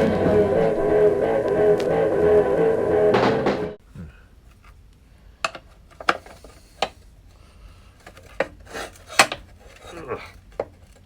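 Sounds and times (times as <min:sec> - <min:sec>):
rock guitar music: 0:00.0 - 0:03.8.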